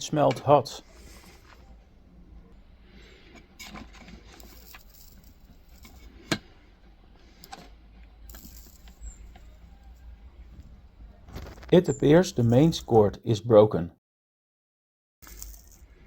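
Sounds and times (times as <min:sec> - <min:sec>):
faint low hum: 0:00.0 - 0:12.8
small hard objects rattling: 0:03.6 - 0:06.4, 0:08.3 - 0:09.7, 0:15.2 - 0:16.0.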